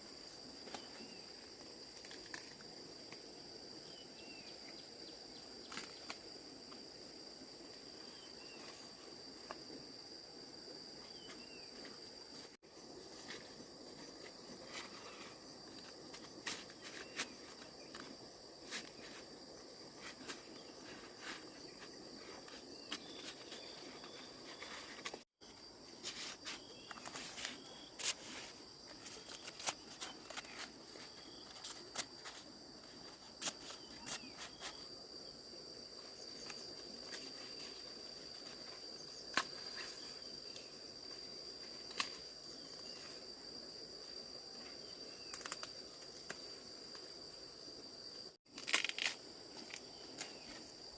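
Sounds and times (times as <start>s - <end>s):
insects droning: 0.0s - 50.9s
sharp cracks and rustles: 48.5s - 50.6s.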